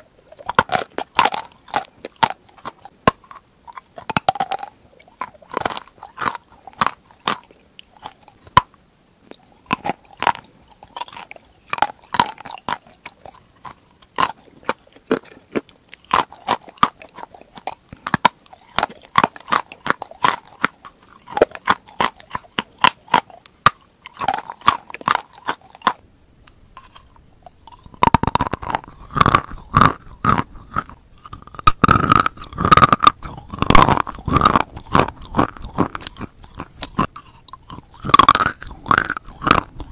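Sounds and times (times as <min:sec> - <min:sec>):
crunching and chewing chalk: 0:00.0 - 0:39.9.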